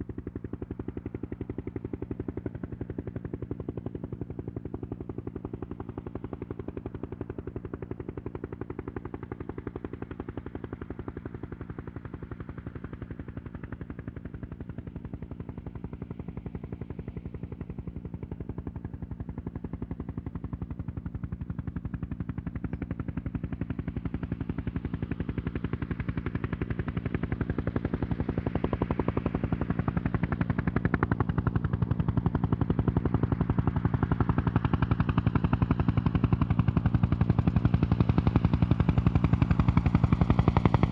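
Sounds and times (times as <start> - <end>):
helicopter rotor beating: 24.8 - 40.9.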